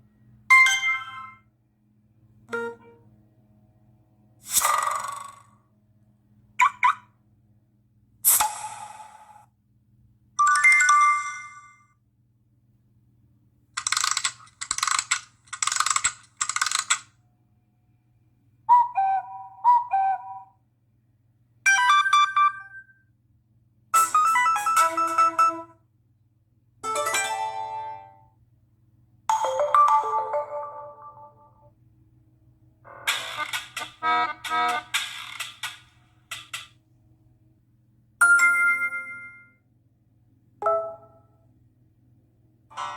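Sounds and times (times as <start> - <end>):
phone notification tones: 2.5 - 3.0, 40.6 - 41.2.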